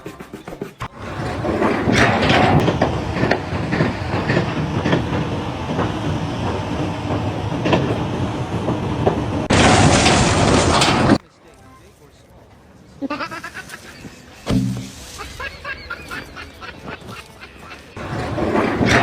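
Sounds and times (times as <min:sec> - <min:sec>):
mechanical rumble: 0:00.8 - 0:11.2, 0:14.4 - 0:19.0
metal clanks and knocks: 0:00.8 - 0:11.2, 0:18.0 - 0:19.0.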